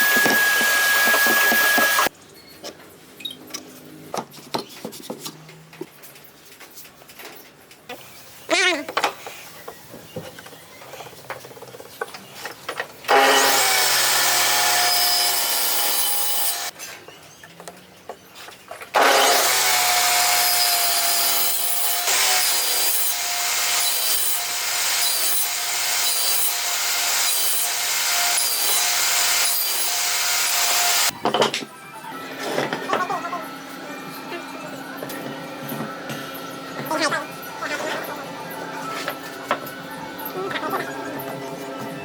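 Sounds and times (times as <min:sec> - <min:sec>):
power saw cutting wood: 0:00.0 - 0:02.1, 0:13.1 - 0:16.7, 0:19.0 - 0:31.1.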